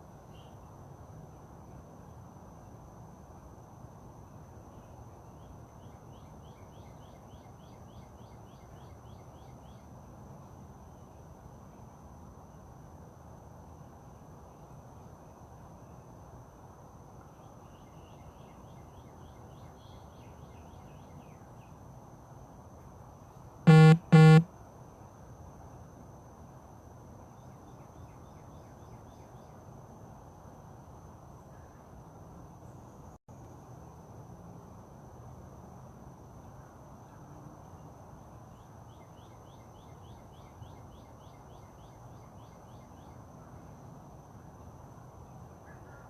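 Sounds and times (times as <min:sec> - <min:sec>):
faint chirps: 0:23.7 - 0:24.5
high continuous whine: 0:23.7 - 0:24.5
short buzzy beeps: 0:23.7 - 0:24.5.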